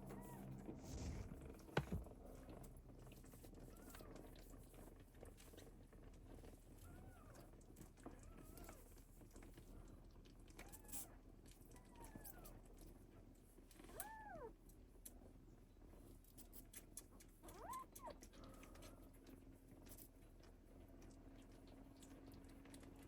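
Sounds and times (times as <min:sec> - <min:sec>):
faint cat mews: 0:13.9 - 0:14.5.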